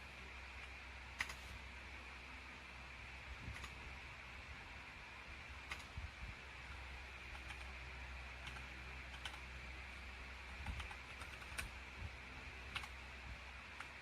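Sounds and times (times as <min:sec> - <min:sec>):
mechanical keyboard typing: 0:01.2 - 0:01.6, 0:03.5 - 0:03.8, 0:05.6 - 0:06.0, 0:06.7 - 0:09.6, 0:10.4 - 0:11.8, 0:12.6 - 0:13.0, 0:13.7 - 0:14.0.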